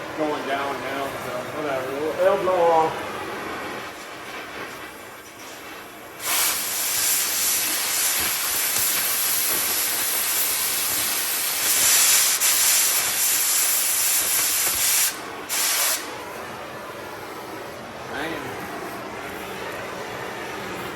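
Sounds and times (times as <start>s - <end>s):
cutting torch hissing: 4.0s - 16.2s.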